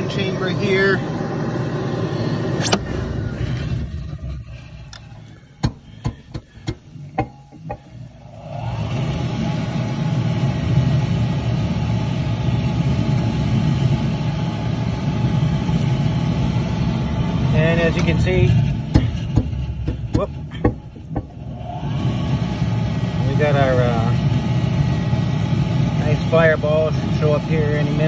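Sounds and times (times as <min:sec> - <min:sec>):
wood furnace draft fan and fire: 0:00.0 - 0:28.0
sharp metal clicks and knocks: 0:04.9 - 0:08.1.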